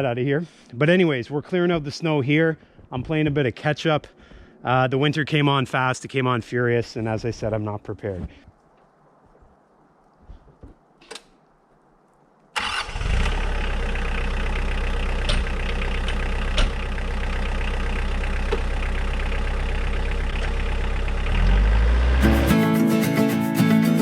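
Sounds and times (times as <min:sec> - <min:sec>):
tractor diesel engine running: 0:12.6 - 0:22.9.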